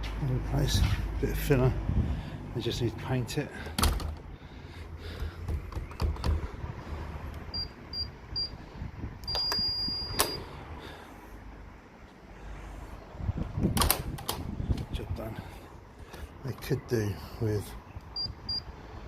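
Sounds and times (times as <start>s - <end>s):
door release clicking: 3.7s - 4.2s, 13.7s - 14.5s
short electronic beeps: 7.5s - 8.6s, 9.3s - 10.4s, 18.2s - 18.7s.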